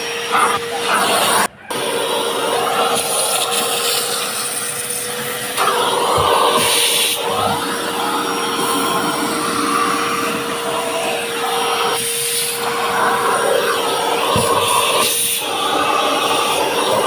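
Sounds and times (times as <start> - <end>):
vacuum cleaner running: 0.0 - 17.0.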